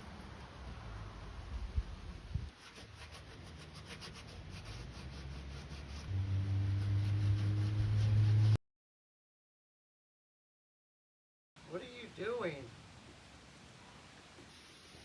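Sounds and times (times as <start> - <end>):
rubbing strokes on wood: 2.5 - 8.6
steady low hum: 5.9 - 8.6.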